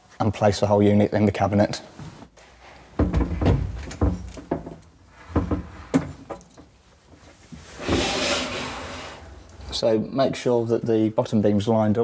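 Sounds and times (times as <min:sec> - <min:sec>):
knocks against a cabinet: 0:03.0 - 0:06.2.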